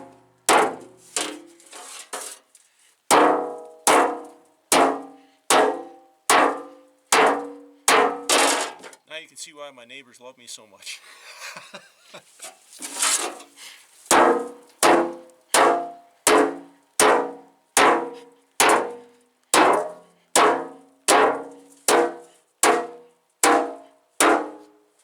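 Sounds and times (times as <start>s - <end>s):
sledgehammer clanging on metal: 0.0s - 2.5s, 3.1s - 9.0s, 12.8s - 13.5s, 14.1s - 24.7s.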